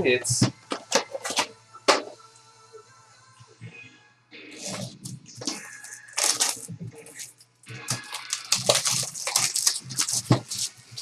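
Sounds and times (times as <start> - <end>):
plastic packaging crinkling: 4.6 - 11.0.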